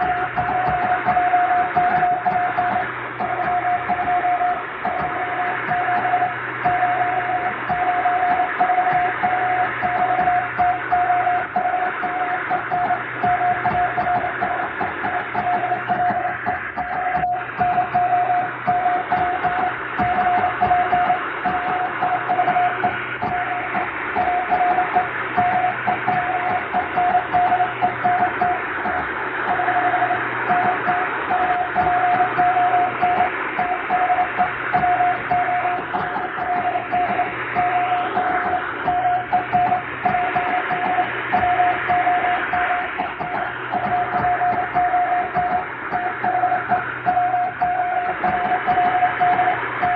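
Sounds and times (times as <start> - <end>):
morse code beeps: 0.0 - 49.9.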